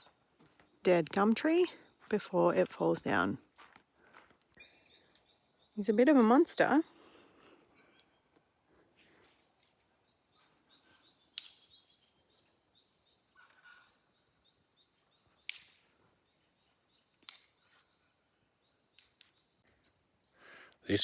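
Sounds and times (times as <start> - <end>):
high bird calls: 10.0 - 20.5.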